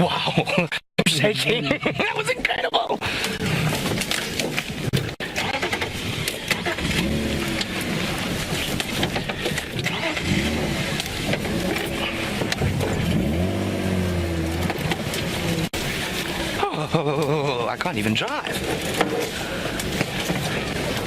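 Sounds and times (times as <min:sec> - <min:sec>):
vehicle rattling and knocking: 0:03.2 - 0:21.0
vehicle engine revving: 0:05.1 - 0:16.6.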